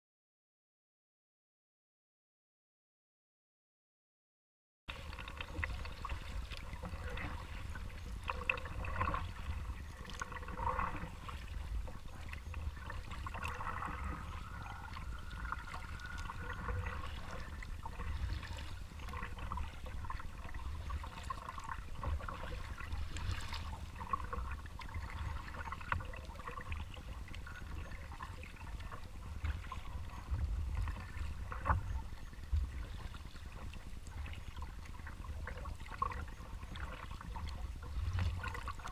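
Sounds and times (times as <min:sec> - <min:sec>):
low rumble: 0:04.9 - 0:21.0
paddle splashing: 0:04.9 - 0:38.9
water dripping off paddle: 0:05.0 - 0:29.8.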